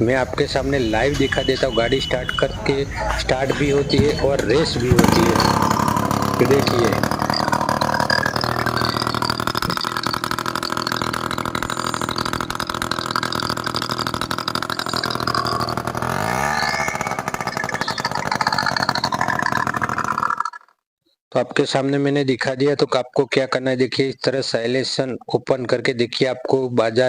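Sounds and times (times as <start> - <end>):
scooter engine revving: 0.8 - 20.6.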